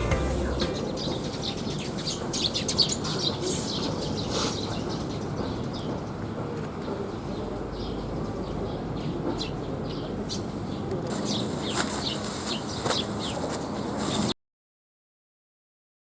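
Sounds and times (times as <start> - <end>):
small birds chirping: 0.0 - 6.3, 7.1 - 13.8.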